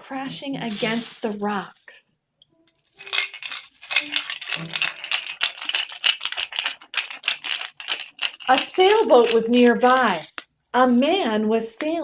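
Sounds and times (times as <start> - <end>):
hand percussion rattling: 3.0 - 9.9.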